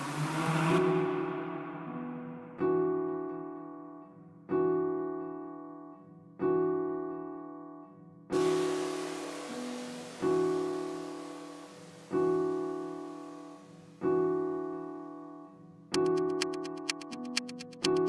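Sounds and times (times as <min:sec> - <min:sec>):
hissing wash: 0:08.4 - 0:13.3
keyboard chord loop: 0:15.9 - 0:18.0.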